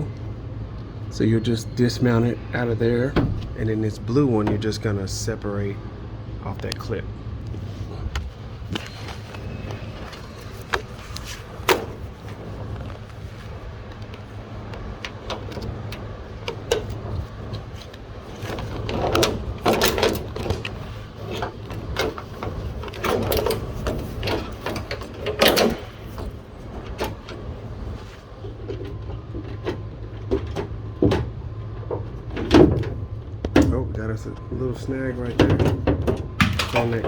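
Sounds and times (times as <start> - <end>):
low hum: 0.0 - 37.0
plastic and metal parts rattling: 8.7 - 33.8, 35.2 - 37.0.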